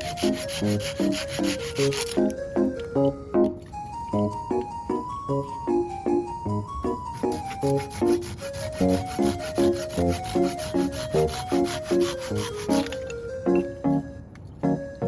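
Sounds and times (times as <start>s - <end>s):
light keyboard tune with bass: 0.0s - 15.0s.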